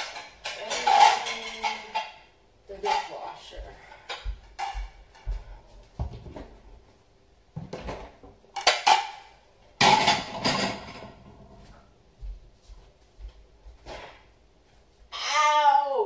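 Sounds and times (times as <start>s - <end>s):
dishes and silverware clattering: 0.0s - 3.3s, 8.6s - 11.5s.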